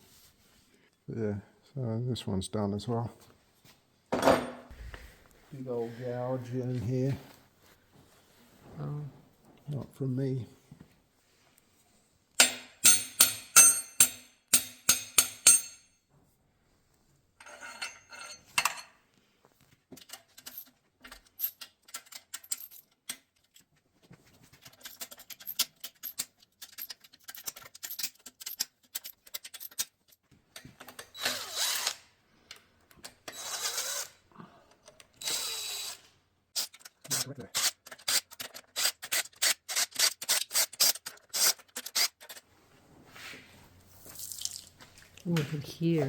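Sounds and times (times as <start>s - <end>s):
ringing metal clatter: 12.4s - 15.9s
ringing metal strikes: 12.4s - 15.9s
tools and parts clinking: 12.4s - 16.0s, 17.4s - 19.0s, 19.9s - 42.4s.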